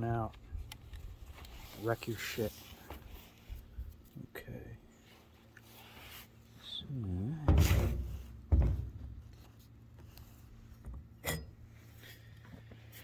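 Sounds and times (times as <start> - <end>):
containers thumping down: 7.5 - 9.3.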